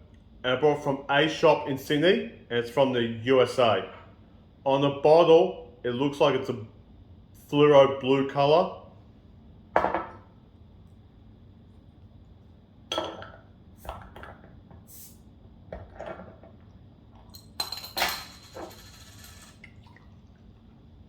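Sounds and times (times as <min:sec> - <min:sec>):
glass bottle knocks and clinks: 0:09.8 - 0:10.2, 0:12.9 - 0:13.4.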